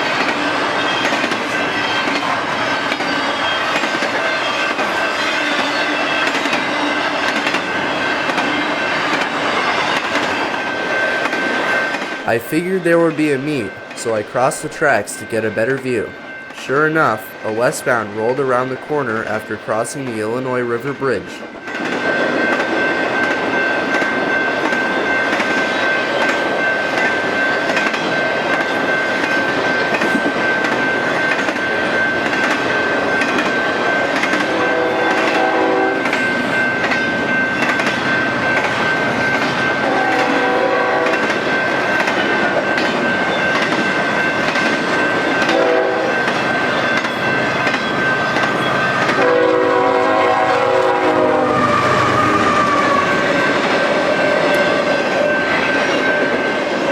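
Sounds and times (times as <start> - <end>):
train wheels clacking on rails: 0.0 - 12.3, 21.4 - 56.9
steady high-pitched tone: 0.5 - 26.8
locomotive horn blasts: 34.5 - 36.1, 39.8 - 41.3, 45.5 - 46.2, 49.2 - 52.0.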